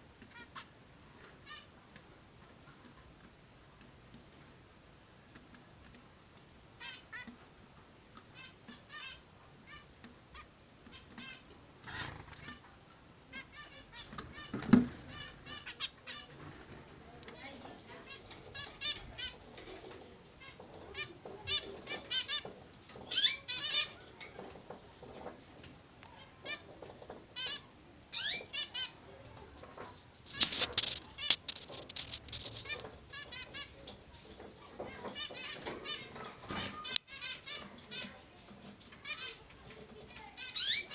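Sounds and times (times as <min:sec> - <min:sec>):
finches chirping: 0:17.4 - 0:24.5, 0:27.4 - 0:29.3, 0:40.2 - 0:40.9
rustle: 0:27.3 - 0:40.9.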